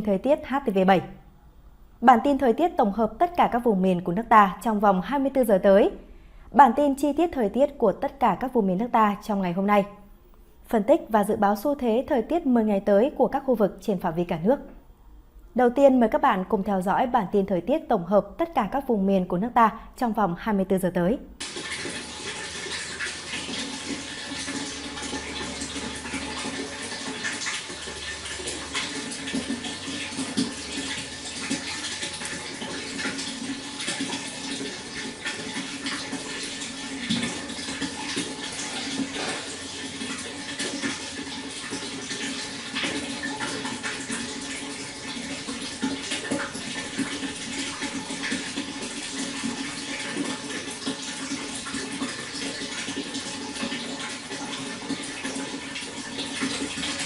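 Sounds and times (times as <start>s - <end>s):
water flowing and splashing: 21.4s - 57.0s.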